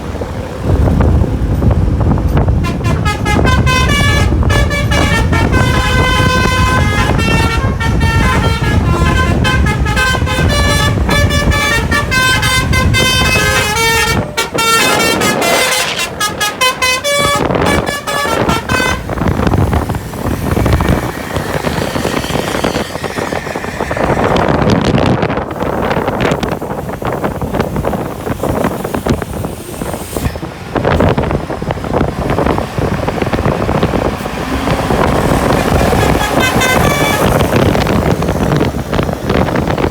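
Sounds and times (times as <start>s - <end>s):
vehicle and street noise: 0.0s - 39.9s
bus horn playing a tune: 2.4s - 25.9s, 31.9s - 39.9s.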